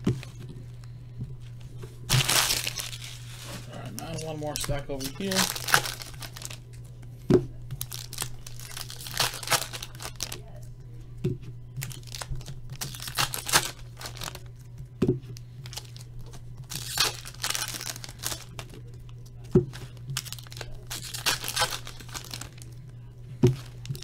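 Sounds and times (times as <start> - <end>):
steady low hum: 0.0 - 24.0
wrappers tearing and crinkling: 2.1 - 6.7, 7.8 - 10.6, 11.8 - 14.6, 15.4 - 18.8, 19.7 - 22.8, 23.5 - 24.0.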